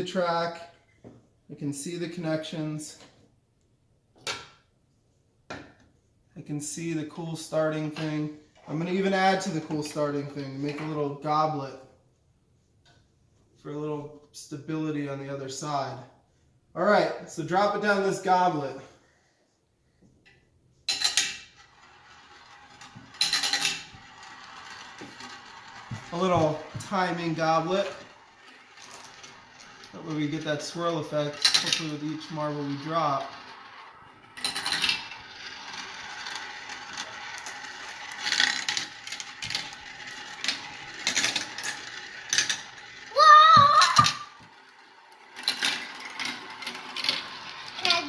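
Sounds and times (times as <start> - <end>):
marbles rattling in plastic run: 21.0 - 48.0.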